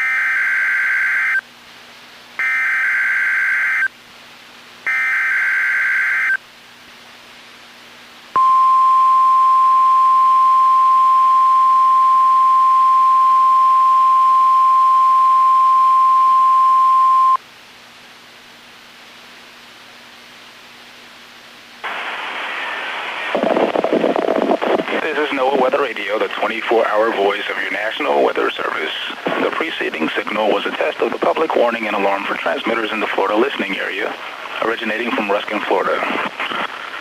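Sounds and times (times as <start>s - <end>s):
steady alarm tone: 2.4s - 3.9s, 4.9s - 6.4s.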